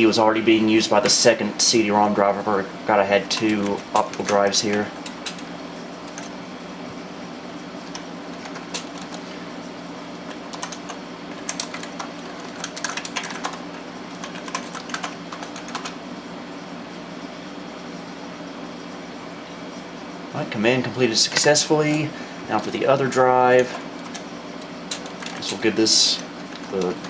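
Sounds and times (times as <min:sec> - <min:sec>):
computer hum: 0:00.0 - 0:27.0
keyboard typing clicks: 0:07.9 - 0:09.2, 0:10.3 - 0:13.6, 0:14.2 - 0:16.0, 0:24.9 - 0:25.6.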